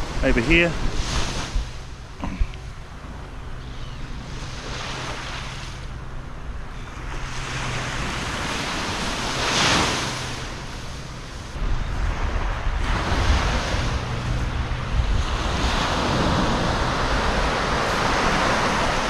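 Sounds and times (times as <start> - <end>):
waves washing on shore: 0.0 - 3.0, 7.0 - 19.0
wind buffeting microphone: 0.0 - 19.0.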